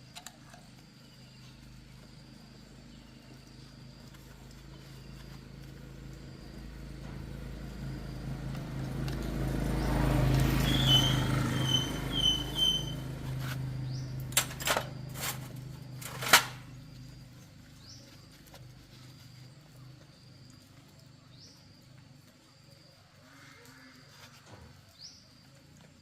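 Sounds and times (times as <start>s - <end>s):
vehicle engine passing by: 3.5s - 21.9s.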